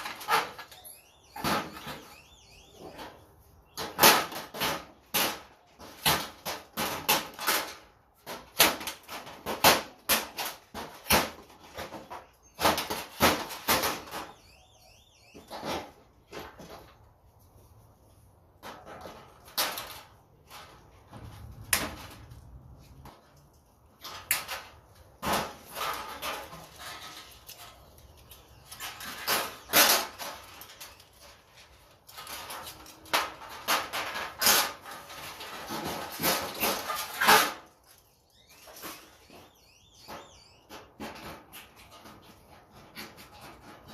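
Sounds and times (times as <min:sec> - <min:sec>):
metal scraping and handling: 0:15.5 - 0:39.4
metal parts clanking and rattling: 0:23.9 - 0:37.9.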